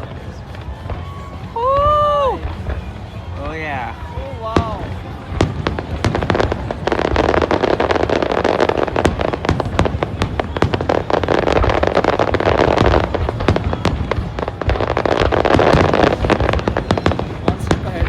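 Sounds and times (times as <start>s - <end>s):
fireworks crackling: 0.0s - 18.0s.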